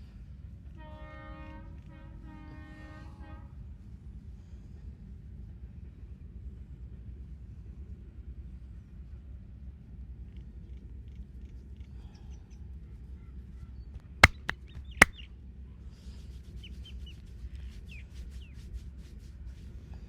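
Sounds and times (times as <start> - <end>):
sharp snapping hits: 14.2 - 14.5.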